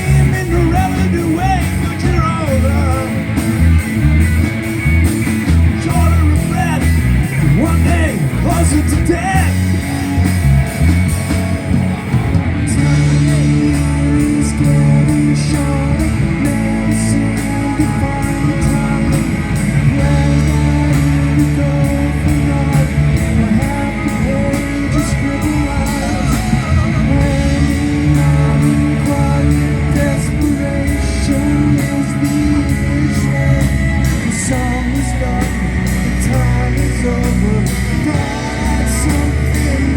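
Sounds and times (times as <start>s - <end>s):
bass guitar: 0.0s - 39.9s
electric guitar: 0.0s - 39.9s
steady drum beat: 0.0s - 39.9s.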